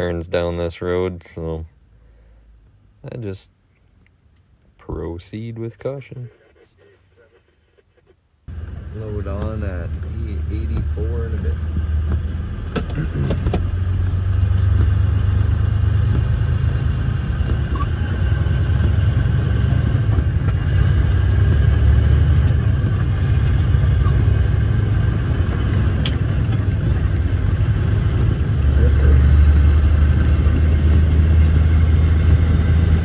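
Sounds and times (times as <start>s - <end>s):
diesel truck engine rumble: 8.5s - 33.0s.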